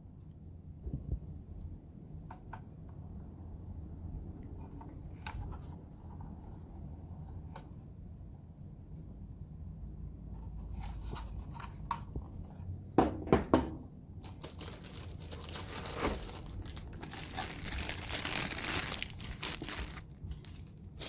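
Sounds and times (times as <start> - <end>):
packaging crinkling and rustling: 14.2 - 21.0.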